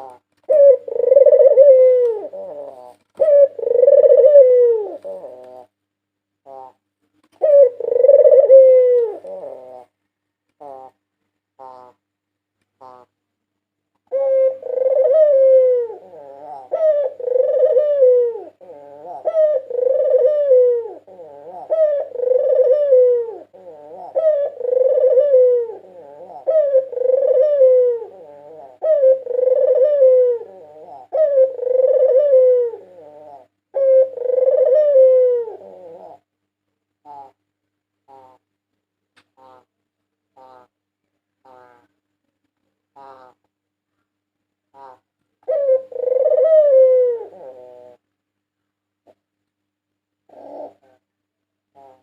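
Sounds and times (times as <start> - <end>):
dove cooing: 0.0 - 5.8, 6.4 - 6.8, 7.4 - 10.0, 10.6 - 11.0, 11.6 - 12.0, 12.8 - 13.1, 14.1 - 36.4, 37.0 - 37.4, 38.0 - 38.4, 39.4 - 39.7, 40.3 - 40.8, 41.4 - 42.0, 42.9 - 43.5, 44.7 - 48.0, 50.2 - 52.0.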